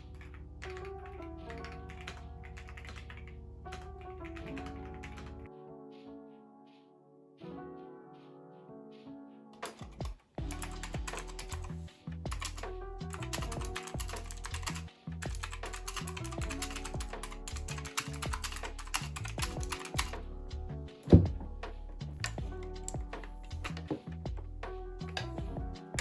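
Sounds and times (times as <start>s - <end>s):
background music: 0.0s - 26.0s
mechanical keyboard typing: 1.5s - 5.4s, 9.6s - 20.2s, 22.2s - 24.2s.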